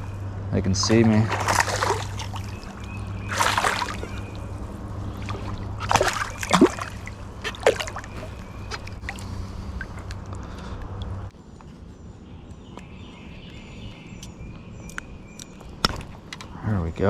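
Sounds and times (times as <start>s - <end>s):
steady low rumble: 0.0s - 17.0s
creek water splashing: 0.7s - 11.2s.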